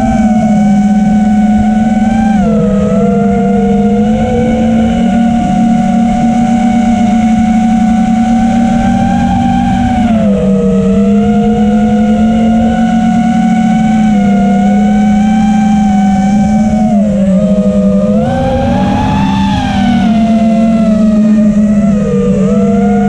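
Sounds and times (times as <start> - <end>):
quadcopter propellers buzzing whine: 0.0 - 23.0.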